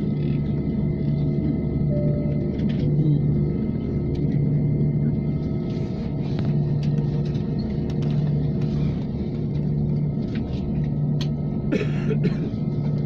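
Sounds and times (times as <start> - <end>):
jet engine rumble: 0.0 - 13.0.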